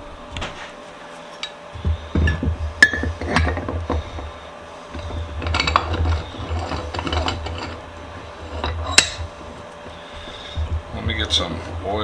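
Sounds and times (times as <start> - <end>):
metallic clicking and scraping of vise screw: 4.9 - 11.8.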